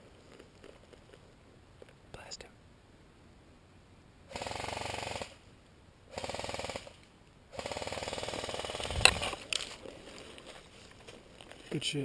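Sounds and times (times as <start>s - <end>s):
airsoft rifle full-auto bursts: 4.3s - 5.4s, 6.1s - 9.0s.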